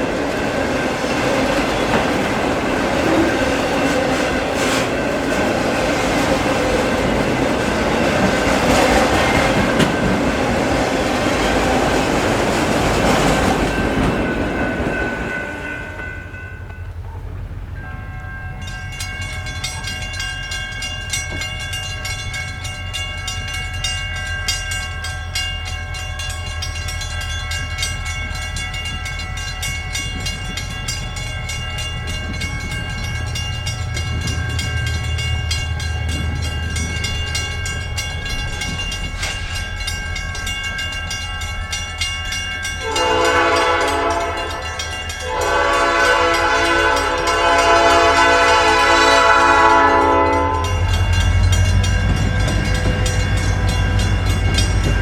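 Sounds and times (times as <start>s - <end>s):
train rumbling: 0.0s - 55.0s
train air horn blasts: 42.8s - 51.0s.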